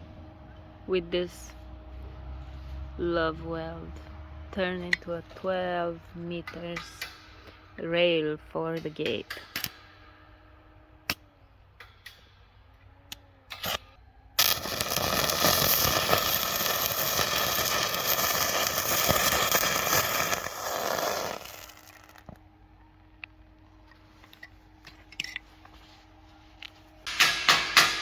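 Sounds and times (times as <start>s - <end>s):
welding arc crackling and hissing: 13.5s - 22.4s.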